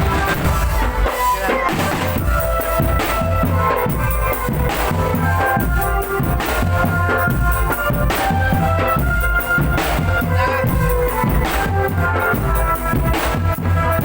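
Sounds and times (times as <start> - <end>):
drum band playing: 0.0 - 14.0
sustained melody line: 0.0 - 14.0.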